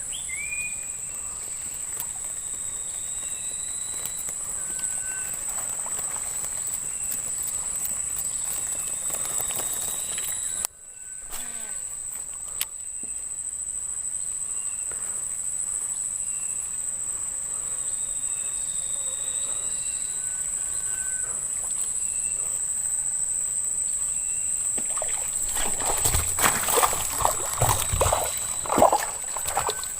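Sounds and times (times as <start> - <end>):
high-pitched insect drone: 2.5 - 13.8, 17.7 - 29.9.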